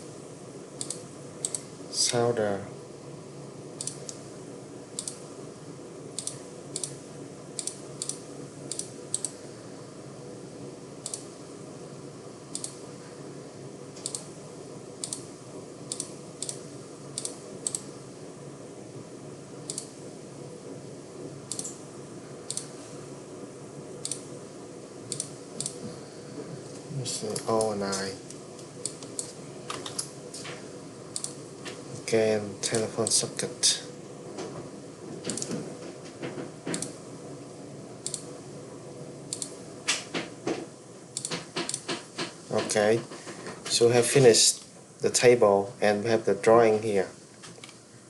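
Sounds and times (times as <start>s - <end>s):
faint steady hum: 0.0s - 48.0s
computer mouse clicks: 0.8s - 1.7s, 3.8s - 4.2s, 5.0s - 5.2s, 6.2s - 7.0s, 7.6s - 9.4s, 11.0s - 11.3s, 12.5s - 12.8s, 14.0s - 14.3s, 15.0s - 15.3s, 15.9s - 17.9s, 19.7s - 19.9s, 21.5s - 21.8s, 22.5s - 22.7s, 24.0s - 24.3s, 25.1s - 25.8s, 27.3s - 30.1s, 31.1s - 31.4s, 35.3s - 35.6s, 36.7s - 37.0s, 38.0s - 38.3s, 39.3s - 40.1s, 41.2s - 42.7s.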